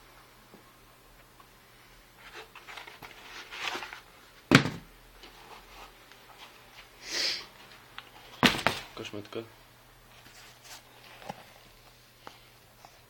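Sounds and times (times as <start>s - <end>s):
paper and cardboard rustling: 2.2s - 6.9s, 10.1s - 11.8s.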